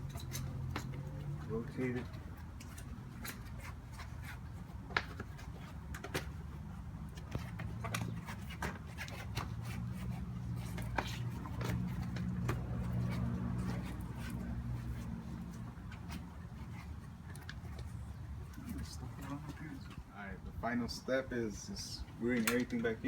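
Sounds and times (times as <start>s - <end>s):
bicycle tire clicking and knocking: 4.8s - 16.4s.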